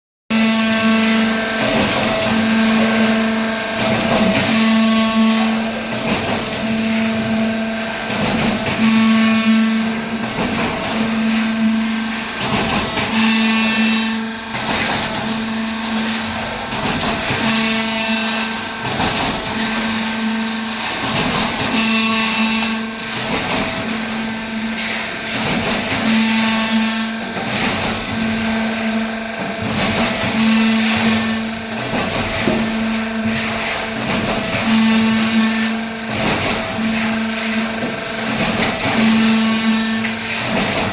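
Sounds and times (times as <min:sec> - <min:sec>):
concrete pump knocking: 0:01.2 - 0:07.5, 0:10.1 - 0:11.4, 0:12.4 - 0:15.5, 0:16.2 - 0:17.9, 0:18.8 - 0:19.9, 0:21.0 - 0:24.1, 0:25.2 - 0:28.5, 0:29.4 - 0:40.9.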